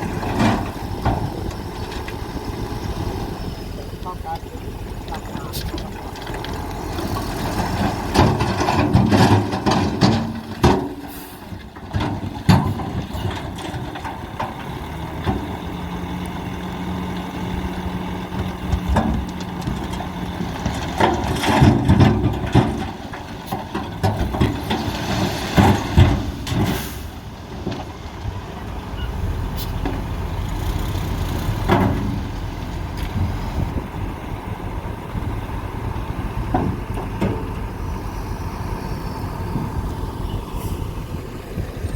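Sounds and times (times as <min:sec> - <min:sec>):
machinery engine drone: 0:00.0 - 0:41.9
sharp knocks and clanks: 0:31.6 - 0:32.3.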